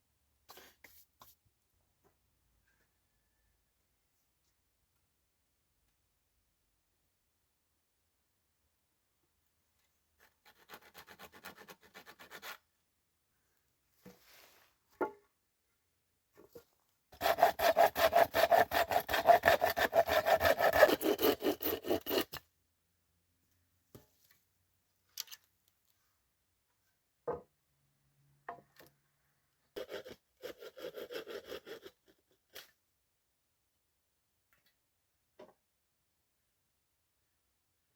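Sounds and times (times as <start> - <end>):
hand saw cutting wood: 10.2 - 12.6, 17.2 - 22.4, 29.8 - 32.7.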